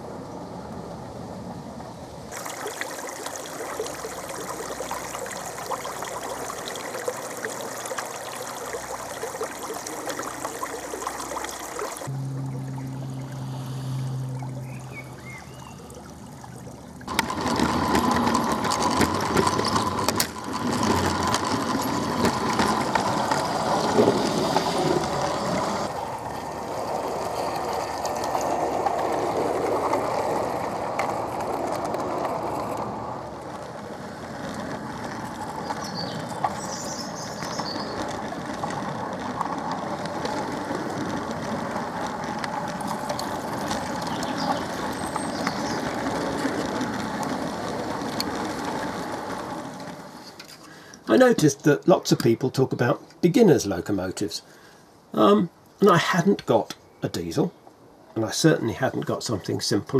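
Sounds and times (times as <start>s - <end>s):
model train wheels rattling: 2.3s - 12.1s, 17.0s - 52.8s
small motor running: 2.3s - 29.6s.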